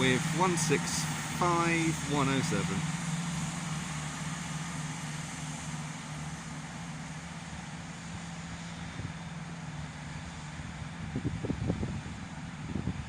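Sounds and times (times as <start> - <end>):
station noise: 0.0 - 4.6
diesel train engines humming: 0.0 - 13.0.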